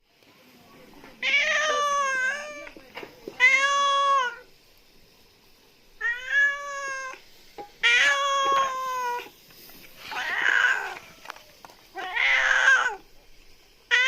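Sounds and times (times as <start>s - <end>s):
cat meowing: 1.2s - 2.8s, 3.4s - 4.5s, 6.0s - 7.2s, 7.8s - 9.3s, 10.0s - 13.1s.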